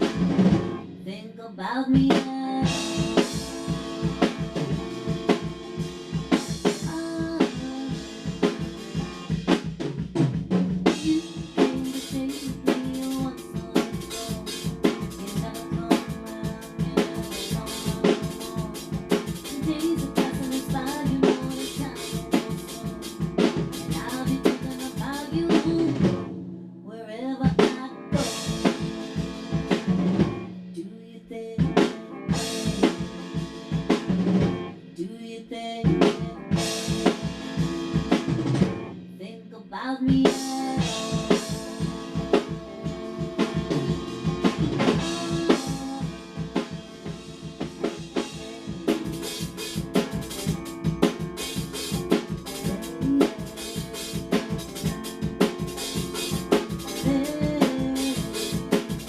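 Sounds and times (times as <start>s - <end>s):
held guitar chords: 0.0s - 1.2s, 2.6s - 26.9s, 27.5s - 30.7s, 31.3s - 35.0s, 35.8s - 39.2s, 40.1s - 59.0s
drum kit beat: 0.0s - 1.3s, 2.0s - 26.8s, 27.4s - 39.4s, 40.0s - 59.0s.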